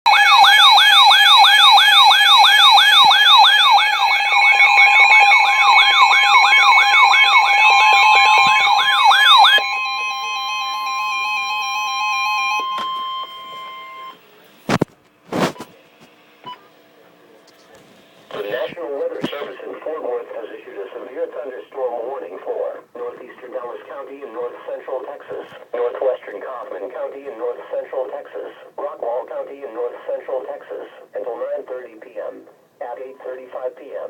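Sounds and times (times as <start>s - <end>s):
electronic siren yelping: 0.1s - 14.2s
steady electronic tones: 0.4s - 14.2s.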